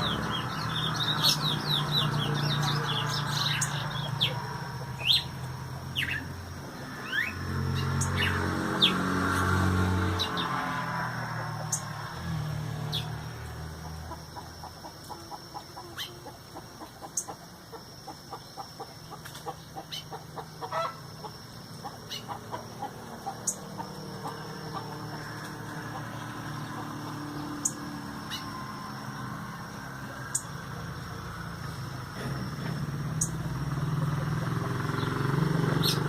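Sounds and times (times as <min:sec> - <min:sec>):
clucking bird notes: 0:00.0 - 0:09.0, 0:12.9 - 0:28.6
birds chirping: 0:00.0 - 0:36.0.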